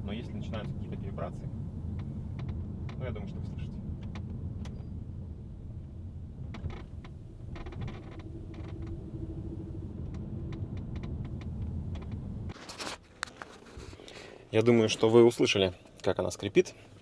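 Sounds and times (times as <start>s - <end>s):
road and engine rumble: 0.0s - 17.0s
car seat creaking: 6.5s - 12.8s.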